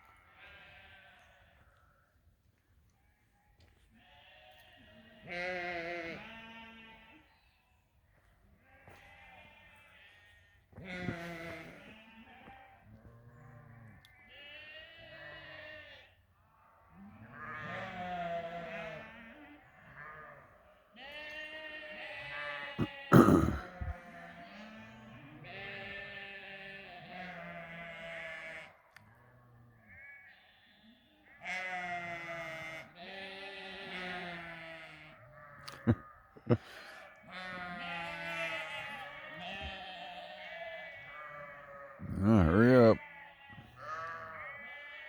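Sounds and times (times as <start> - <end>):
sheep bleating: 0.0 - 1.8, 3.6 - 7.3, 8.6 - 16.2, 17.0 - 45.0.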